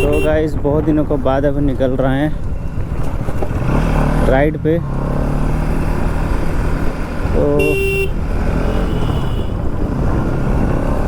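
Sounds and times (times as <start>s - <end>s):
vehicle horn: 0.0s - 0.4s, 7.4s - 9.7s
road noise: 0.0s - 11.0s
motorcycle engine at low revs: 2.4s - 11.0s.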